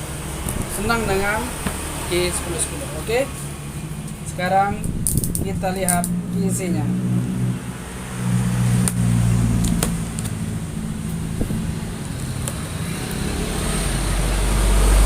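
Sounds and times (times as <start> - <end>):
vehicle engine humming: 0.0 - 15.0.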